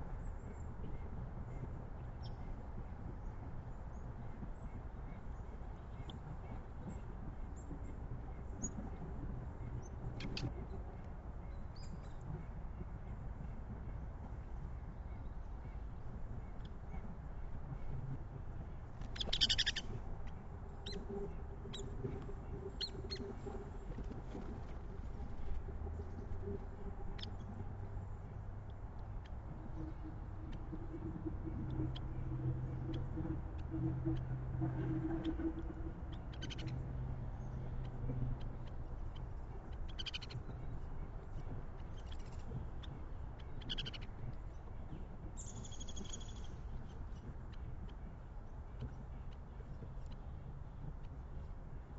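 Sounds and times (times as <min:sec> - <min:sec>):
low outdoor background noise: 0:00.0 - 0:51.9
steady low background noise: 0:00.0 - 0:51.9
songbirds chirping: 0:00.1 - 0:51.9
songbird calls: 0:19.0 - 0:23.8, 0:37.4 - 0:40.7, 0:41.8 - 0:48.0.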